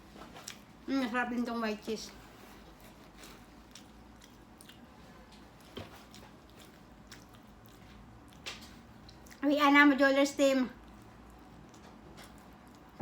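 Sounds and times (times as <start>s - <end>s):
faint chewing with mouth clicks: 0.1s - 1.1s, 1.9s - 9.6s, 10.7s - 13.0s.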